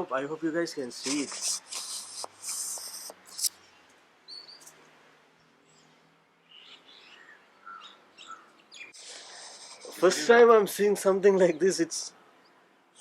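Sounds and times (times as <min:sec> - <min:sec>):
rustling hiss: 0:00.7 - 0:03.8, 0:08.9 - 0:10.6
bird chirps: 0:01.1 - 0:04.8, 0:05.6 - 0:09.9.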